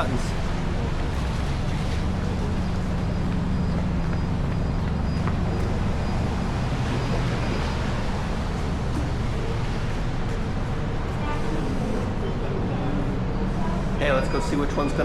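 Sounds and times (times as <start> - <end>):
low urban rumble: 0.0 - 15.0.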